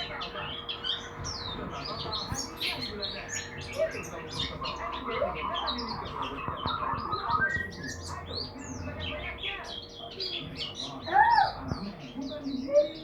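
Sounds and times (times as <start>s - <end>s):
birds chirping and twittering: 0.0s - 13.0s.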